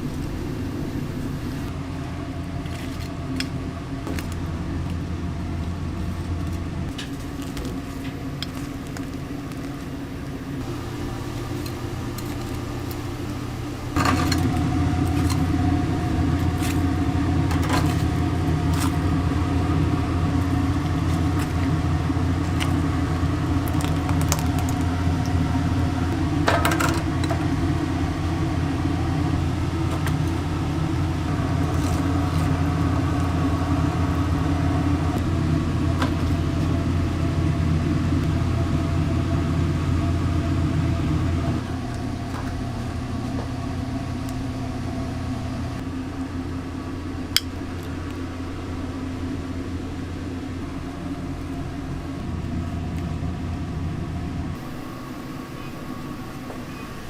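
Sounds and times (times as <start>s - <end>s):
low mechanical hum: 0.0s - 57.0s.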